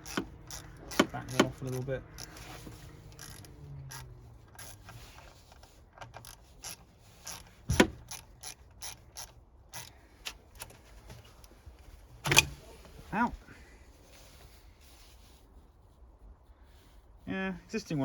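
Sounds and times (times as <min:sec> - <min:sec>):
ratchet clicking: 0:00.0 - 0:10.7.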